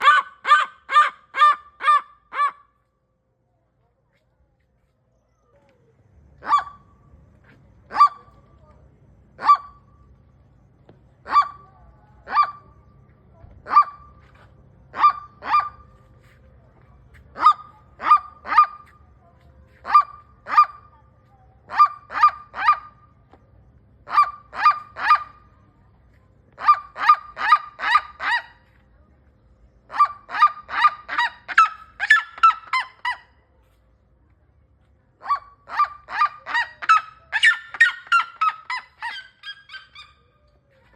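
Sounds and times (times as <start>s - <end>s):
bird yelping calls: 0.0s - 2.7s, 6.4s - 7.0s, 7.9s - 8.4s, 9.4s - 10.0s, 11.2s - 12.9s, 13.6s - 14.2s, 14.9s - 15.9s, 17.3s - 19.0s, 19.8s - 20.9s, 21.7s - 23.1s, 24.0s - 25.6s, 26.6s - 28.6s, 29.9s - 33.3s, 35.2s - 40.5s.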